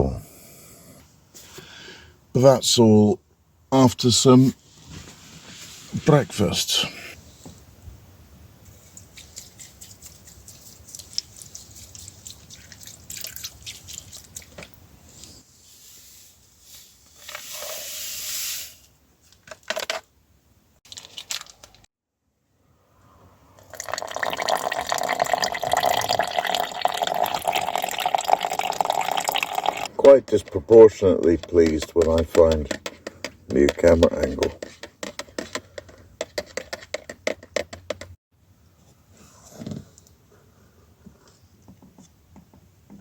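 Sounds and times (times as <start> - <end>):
water pouring into container: 12.0 - 14.5, 23.6 - 29.9.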